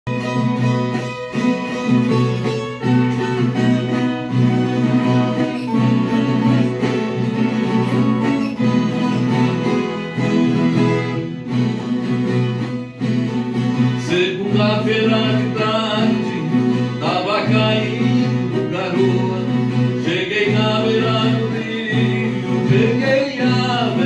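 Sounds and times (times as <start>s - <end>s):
plucked viola: 0.1s - 18.0s
acoustic guitar: 0.1s - 24.0s.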